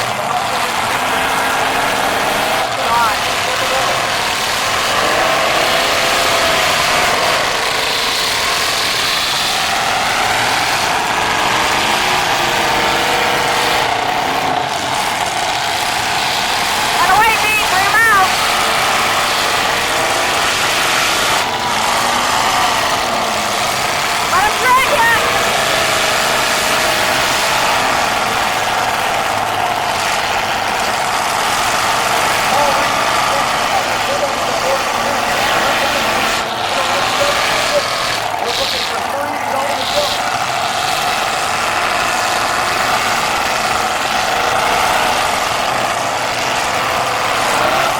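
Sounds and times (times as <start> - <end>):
car engines revving: 0.0 - 47.9.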